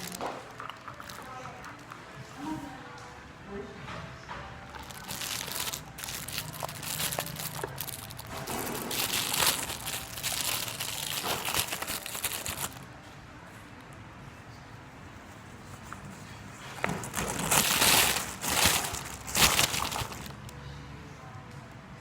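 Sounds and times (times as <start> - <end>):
packaging crinkling and rustling: 0.0 - 2.0, 4.7 - 12.9, 16.8 - 20.5.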